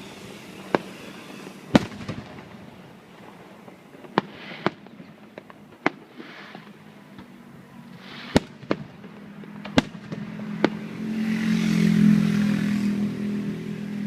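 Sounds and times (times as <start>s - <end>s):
hissing crackle: 0.0s - 7.0s, 7.8s - 10.8s
fireworks bangs: 0.0s - 12.1s.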